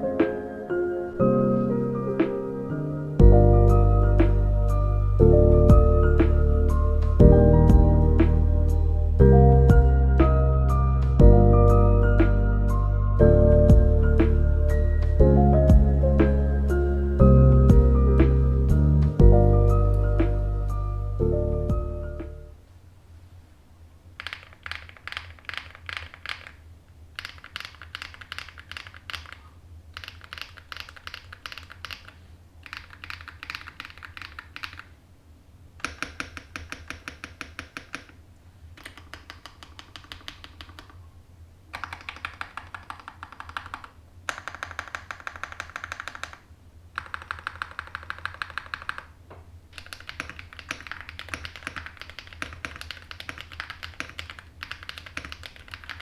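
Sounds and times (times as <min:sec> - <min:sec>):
typing on mechanical keyboard: 0:24.2 - 0:26.6, 0:27.2 - 0:34.9, 0:35.8 - 0:38.2, 0:38.8 - 0:41.0, 0:41.7 - 0:49.2, 0:49.8 - 0:56.0.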